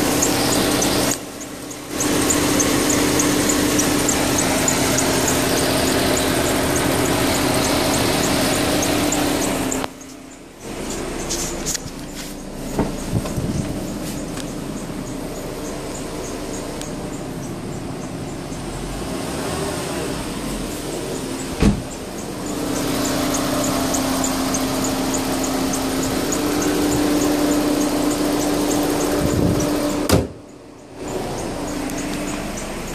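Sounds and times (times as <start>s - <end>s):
car engine running: 0.0s - 32.9s
high-pitched squeak: 10.8s - 16.0s.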